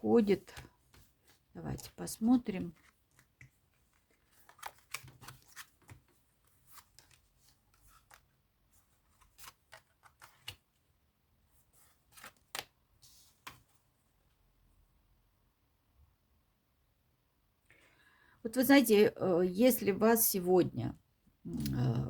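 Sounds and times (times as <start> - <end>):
cards shuffled and laid out: 0.2 - 10.8, 11.9 - 13.8.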